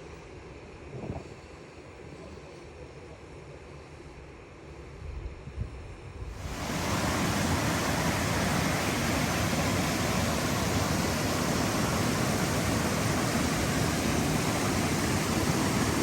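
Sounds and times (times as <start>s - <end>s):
river water rushing over rapids: 6.4s - 16.0s.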